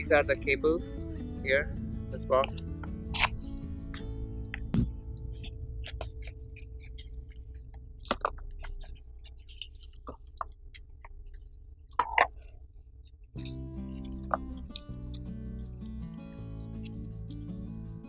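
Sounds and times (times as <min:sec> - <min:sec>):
faint low hum: 0:02.9 - 0:15.1.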